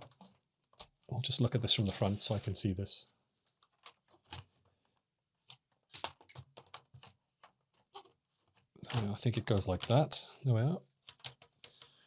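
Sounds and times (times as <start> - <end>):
plastic clicks and knocks: 8.8 - 10.1.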